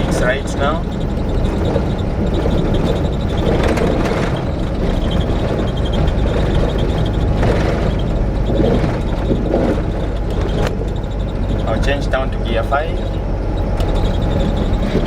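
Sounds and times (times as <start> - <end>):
road noise: 0.0 - 15.0
truck diesel engine: 0.0 - 15.0.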